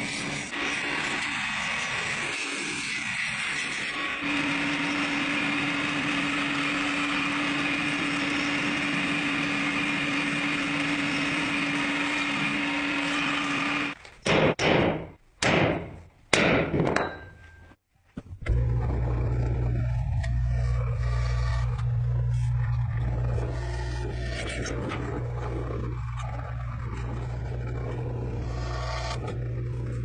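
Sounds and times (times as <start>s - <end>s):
power tool motor grinding: 3.4s - 14.0s, 18.4s - 30.0s.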